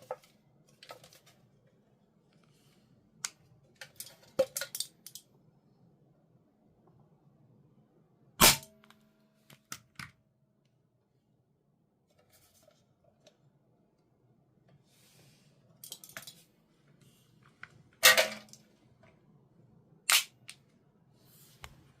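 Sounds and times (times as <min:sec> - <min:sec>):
airsoft pistol shots: 0:08.4 - 0:08.7.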